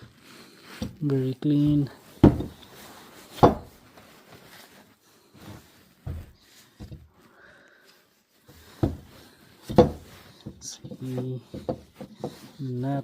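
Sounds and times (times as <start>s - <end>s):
dull knocks of parts set down: 2.2s - 2.7s, 3.3s - 3.8s, 8.6s - 12.4s.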